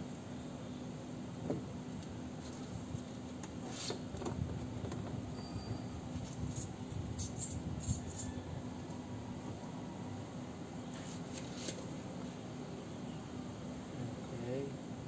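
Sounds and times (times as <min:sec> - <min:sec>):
steady low hum: 0:00.0 - 0:15.0.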